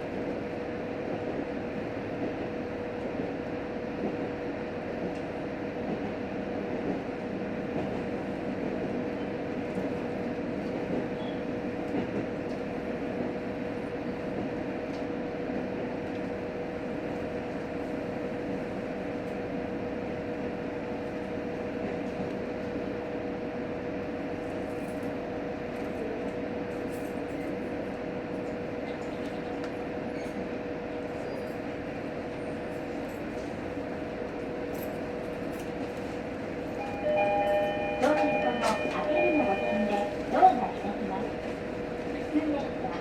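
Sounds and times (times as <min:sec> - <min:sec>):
railcar engine idling hum: 0:00.0 - 0:43.0.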